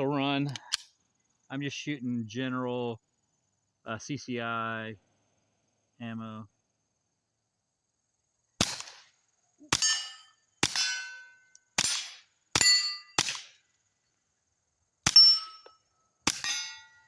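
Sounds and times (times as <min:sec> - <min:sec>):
suppressed pistol shots: 0:08.6 - 0:09.1, 0:09.7 - 0:11.2, 0:11.8 - 0:13.6, 0:16.2 - 0:16.7
bullet clanging on steel target: 0:09.7 - 0:13.3, 0:15.1 - 0:17.0.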